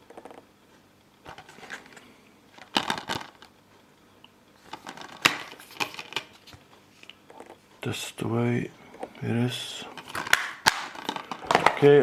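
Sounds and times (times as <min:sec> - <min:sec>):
plastic case clicks and rattles: 0:02.6 - 0:03.5, 0:04.7 - 0:06.3, 0:10.0 - 0:12.0
plastic case snapping: 0:04.7 - 0:06.3, 0:10.0 - 0:12.0.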